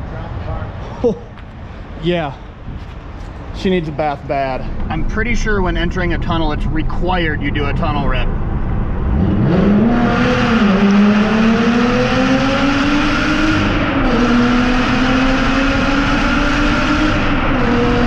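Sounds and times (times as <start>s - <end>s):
sports car accelerating hard: 6.6s - 18.0s.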